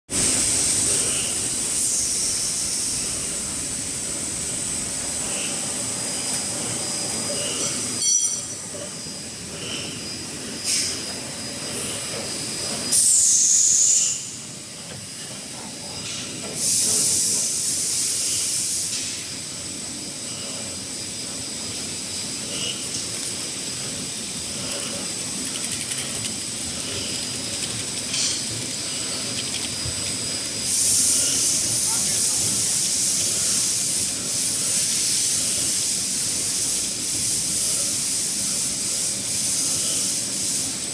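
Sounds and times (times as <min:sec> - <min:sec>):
high-pitched hissing bursts: 0:00.2 - 0:06.4, 0:16.6 - 0:19.3, 0:26.4 - 0:40.9.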